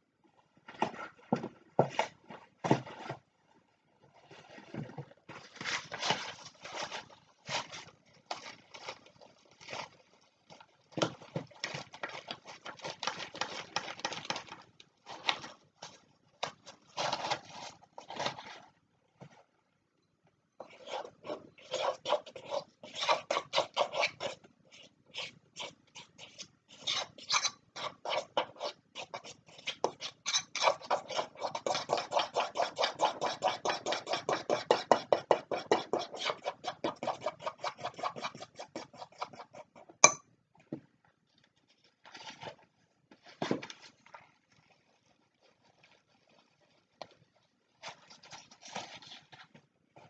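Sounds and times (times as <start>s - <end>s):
icing beaten by hand in bowl: 20.9s - 24.4s, 25.1s - 39.8s.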